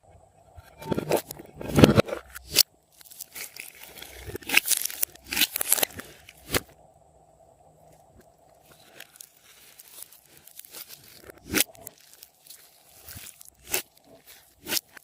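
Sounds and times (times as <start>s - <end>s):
plastic wrapper crinkling and tearing: 2.9s - 6.7s, 8.6s - 15.0s.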